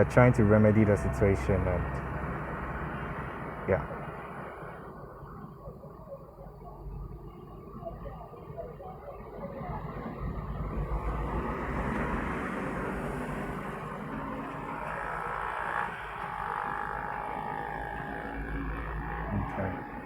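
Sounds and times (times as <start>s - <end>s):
traffic rumbling past: 0.0s - 20.0s.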